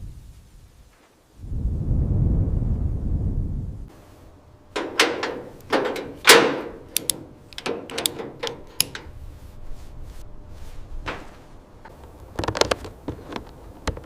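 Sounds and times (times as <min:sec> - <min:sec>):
irregular knocks and clicks: 0:04.8 - 0:09.1.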